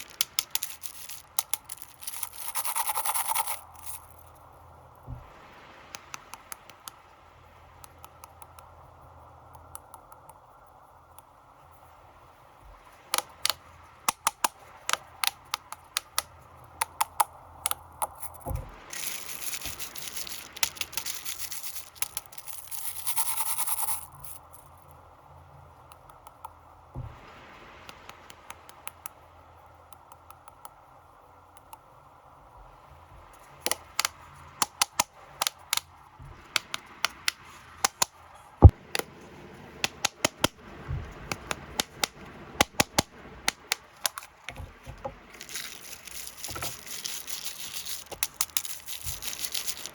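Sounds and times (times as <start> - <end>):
plastic wrappers crinkling: 0.0 - 4.2, 18.1 - 24.4, 43.5 - 49.9.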